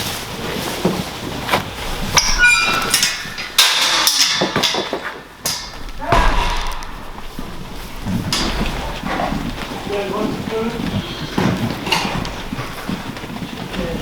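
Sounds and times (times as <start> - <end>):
knocks and thumps: 0.8 - 14.0
short high-pitched squeak: 2.2 - 3.4.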